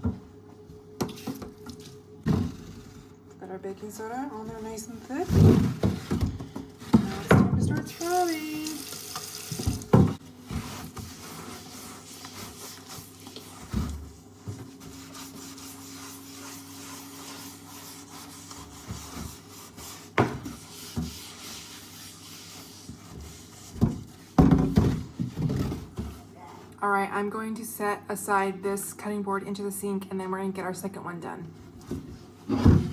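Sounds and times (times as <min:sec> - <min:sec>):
scrubbing a wooden board: 0:10.4 - 0:24.4.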